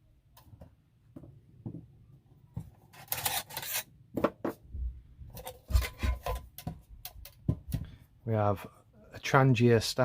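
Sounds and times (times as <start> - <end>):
rubbing and scraping of cook kit: 2.7 - 4.6, 5.3 - 6.8.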